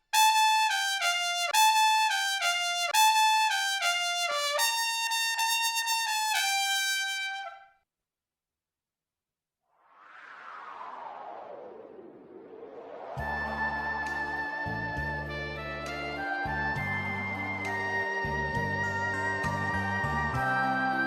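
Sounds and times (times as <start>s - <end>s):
solo trumpet melody: 0.0s - 7.8s.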